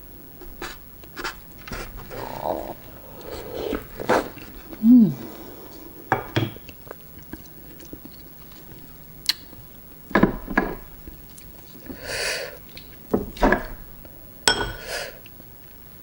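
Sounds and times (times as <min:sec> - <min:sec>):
oyster being chewed: 0:00.4 - 0:09.7.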